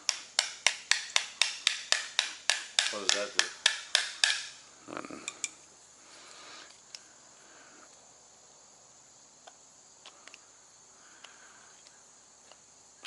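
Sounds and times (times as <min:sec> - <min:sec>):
tools clicking and tapping: 0:00.0 - 0:04.6, 0:05.2 - 0:05.6
steady high hiss: 0:00.0 - 0:13.0.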